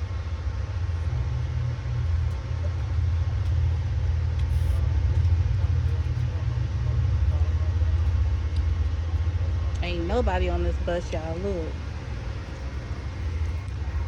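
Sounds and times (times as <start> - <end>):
train rumbling along track: 0.0 - 14.0.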